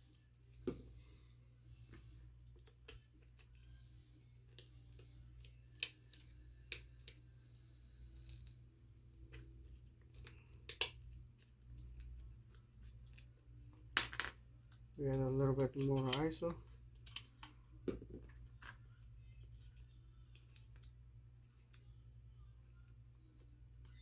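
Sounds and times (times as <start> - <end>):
plastic pry cards clicking and scraping: 9.4 - 13.3.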